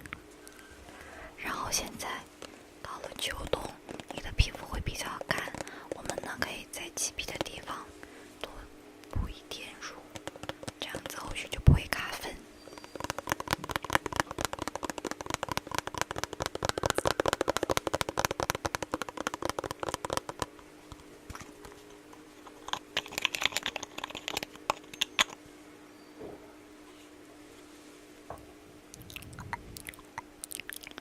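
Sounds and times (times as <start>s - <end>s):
fingertips tapping on skin: 2.0s - 7.8s, 9.5s - 25.4s.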